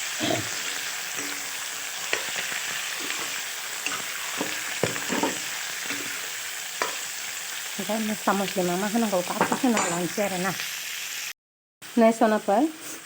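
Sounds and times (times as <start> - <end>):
chicken sizzling in hot oil: 0.0 - 13.0
spatula scraping a pan: 0.1 - 7.0.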